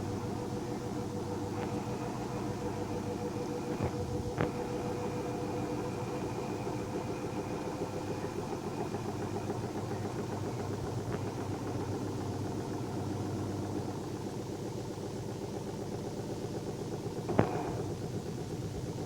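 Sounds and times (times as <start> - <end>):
faint whine: 0.0 - 14.2
washing machine running: 0.0 - 19.0.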